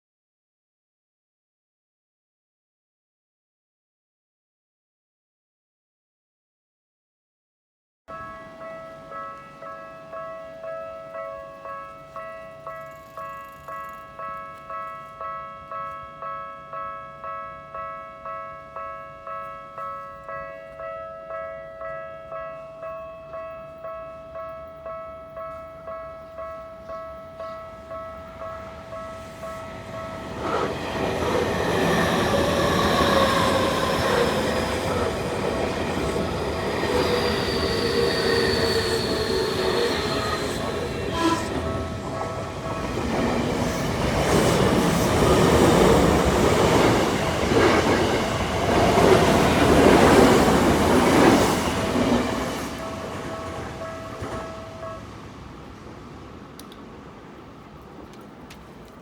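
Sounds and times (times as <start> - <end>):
level crossing warning bell: 8.1 - 55.6
train wheels clattering on rails: 25.3 - 55.2
train motor whine: 29.3 - 48.0.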